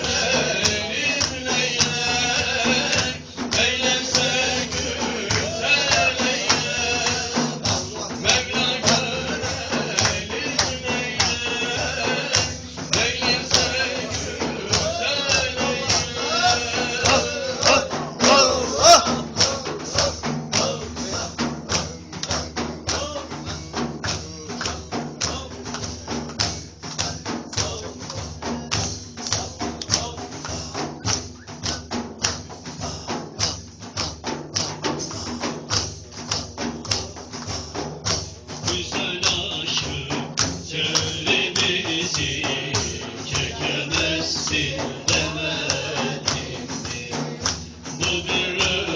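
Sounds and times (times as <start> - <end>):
frame drums beaten by hand: 0.0 - 48.9
voices singing: 0.0 - 48.9.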